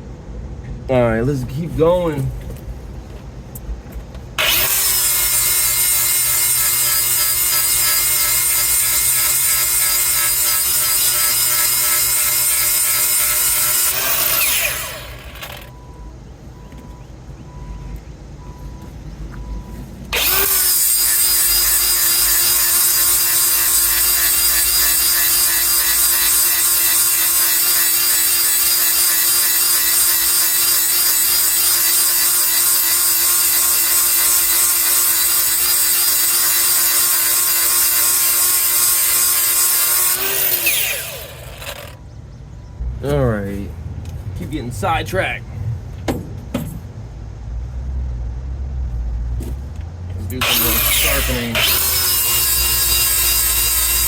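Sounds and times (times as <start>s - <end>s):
power grinder running: 4.4s - 15.7s, 20.1s - 42.0s, 50.3s - 54.0s.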